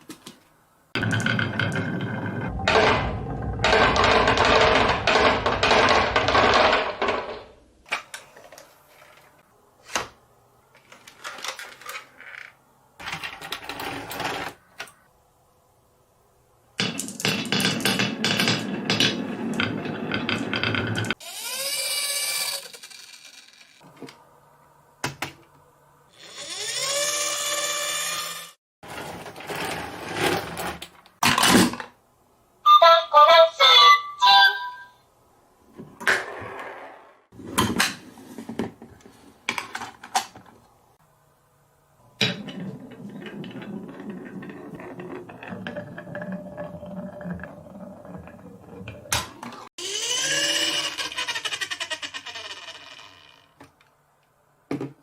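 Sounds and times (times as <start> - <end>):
marbles rolling down plastic track: 1.0 - 7.4, 16.8 - 23.8, 42.3 - 49.0, 49.9 - 53.5.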